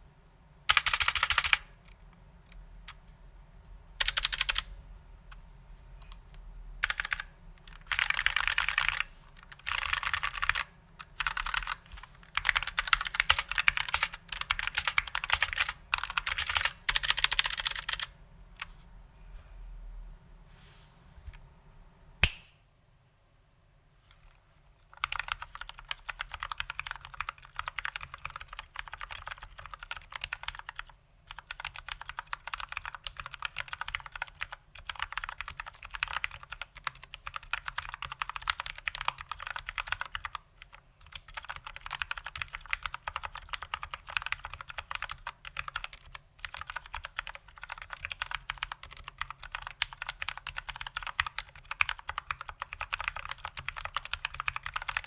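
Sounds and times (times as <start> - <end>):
fast typing on mechanical keyboard: 0.7 - 1.7, 4.0 - 4.7, 6.8 - 18.1, 24.9 - 55.0.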